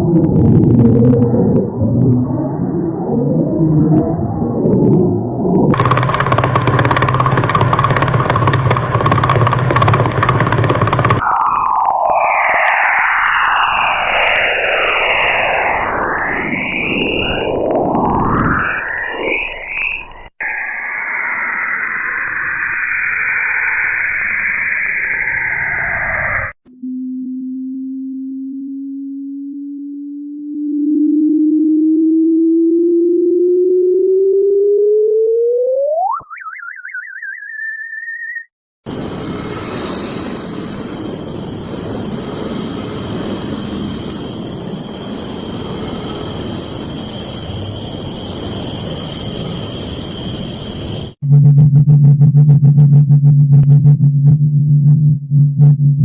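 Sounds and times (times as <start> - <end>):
warbling electronic tone: 0.0 - 38.5, 43.0 - 56.0
dense noisy rumble: 5.7 - 11.4, 38.9 - 56.0
sweeping whistle-like glides: 5.8 - 27.3, 27.9 - 51.5.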